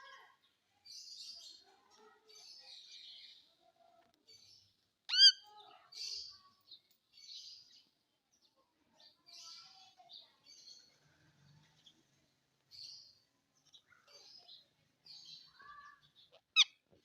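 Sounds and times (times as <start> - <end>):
parrot raspy chirps: 5.1 - 5.4, 16.3 - 16.8
parrot squawking: 5.1 - 5.4, 16.3 - 16.8.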